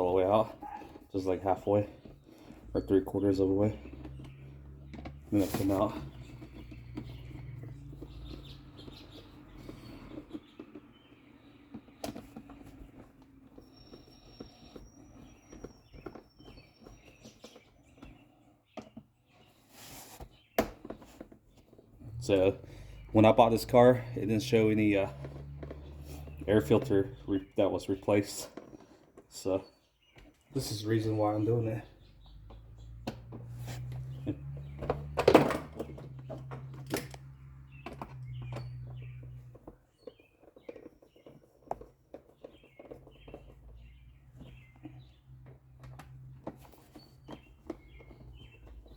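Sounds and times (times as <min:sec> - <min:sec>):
plastic parts clicking and knocking: 0:00.0 - 0:19.6, 0:20.2 - 0:48.9.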